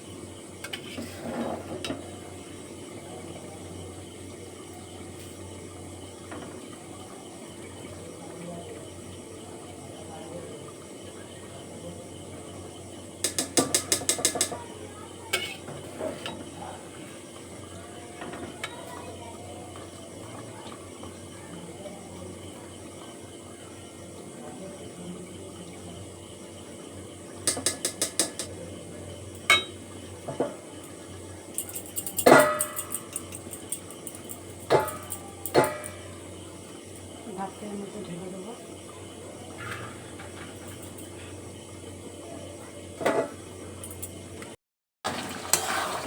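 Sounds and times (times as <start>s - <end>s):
metal utensils clattering: 31.6s - 36.0s.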